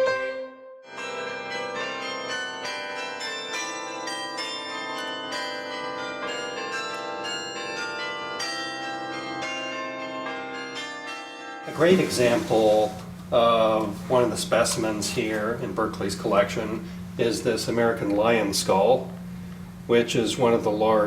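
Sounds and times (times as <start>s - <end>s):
carillon bells playing: 0.0s - 15.7s.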